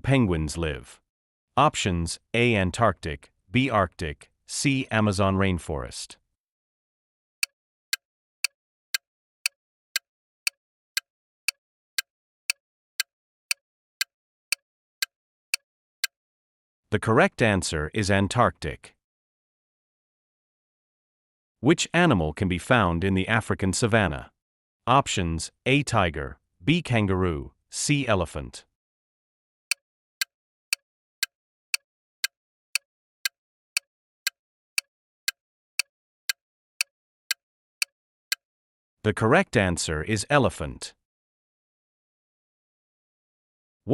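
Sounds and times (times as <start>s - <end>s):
sharp clock-like ticking: 30.2s - 31.8s, 33.2s - 34.9s, 35.8s - 37.4s.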